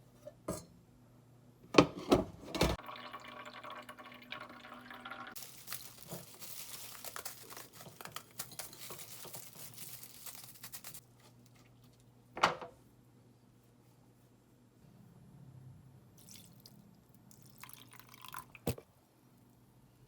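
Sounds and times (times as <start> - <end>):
plastic packaging crinkling: 5.4 - 12.0.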